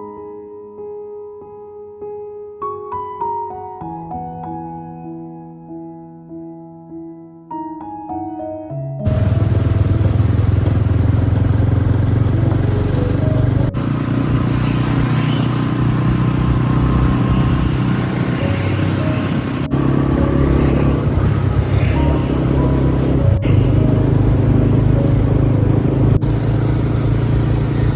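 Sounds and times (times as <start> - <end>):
motorbike engines running: 9.1 - 27.9.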